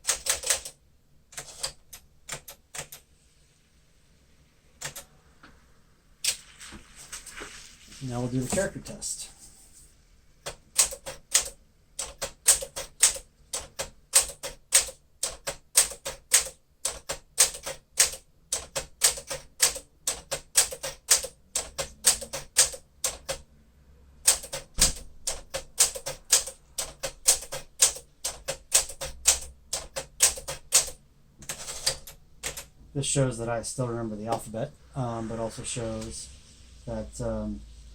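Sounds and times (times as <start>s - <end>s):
typewriter type-bar strikes: 0.0s - 0.8s, 10.4s - 23.4s, 24.2s - 32.7s
heavy typewriter knock: 24.3s - 32.6s.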